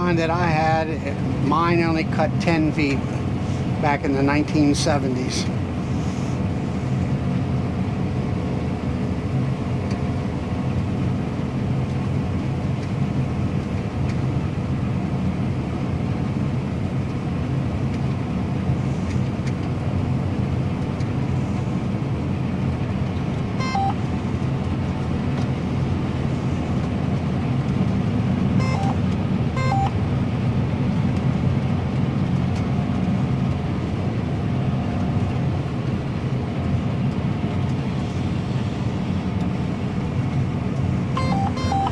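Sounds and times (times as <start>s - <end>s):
combine harvester engine drone: 0.0s - 41.9s
short beeps: 23.6s - 24.0s, 28.6s - 30.0s, 41.2s - 41.9s.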